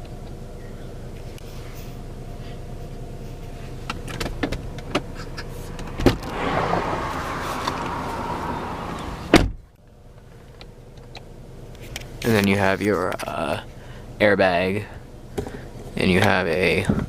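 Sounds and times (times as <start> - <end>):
car engine hum: 0.0 - 17.0.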